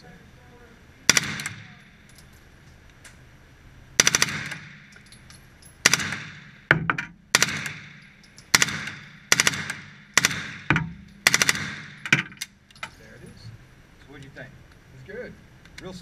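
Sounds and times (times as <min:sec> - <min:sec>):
suppressed gun firing bursts: 0:01.1 - 0:01.8, 0:04.0 - 0:05.0, 0:05.8 - 0:12.4
gunshot reverberation: 0:01.1 - 0:02.1, 0:04.0 - 0:05.0, 0:05.8 - 0:12.4.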